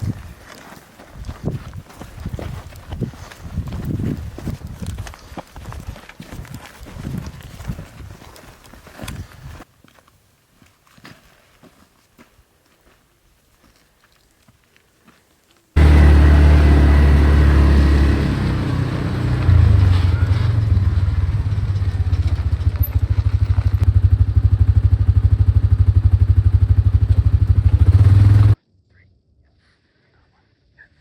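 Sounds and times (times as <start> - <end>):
vehicle engine running: 15.8 - 28.6.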